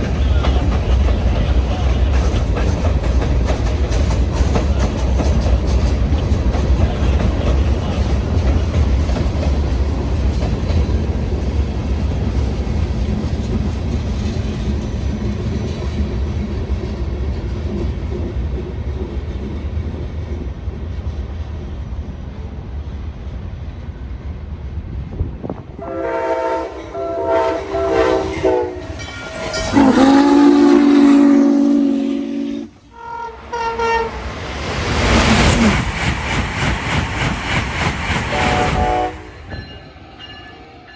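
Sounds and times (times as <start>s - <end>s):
freight train rumble and wheel clatter: 0.0s - 40.9s
locomotive chime air horn: 25.8s - 34.2s, 38.3s - 40.4s.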